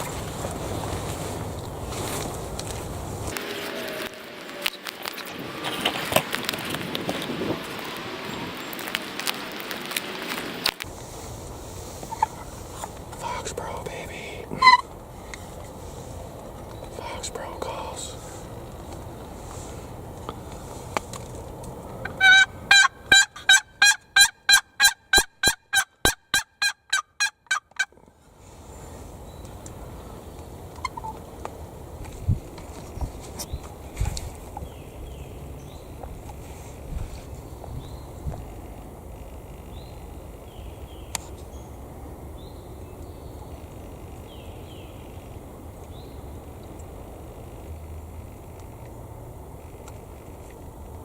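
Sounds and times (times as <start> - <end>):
small birds chirping: 16.4 - 19.7, 32.9 - 47.7
turkey yelps: 22.0 - 27.9.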